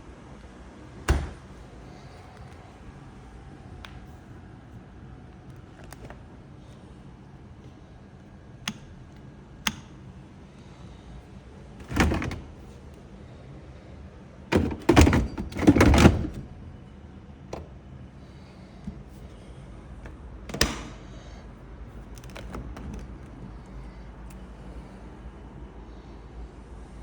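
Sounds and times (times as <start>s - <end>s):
fridge door thuds and rubbing: 1.0s - 1.6s, 11.8s - 12.7s, 14.5s - 16.6s.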